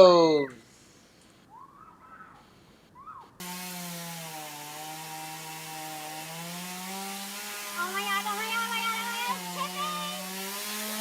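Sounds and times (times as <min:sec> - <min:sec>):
faint bird chirps: 0:01.4 - 0:03.4
chainsaw running at high speed: 0:03.4 - 0:11.0.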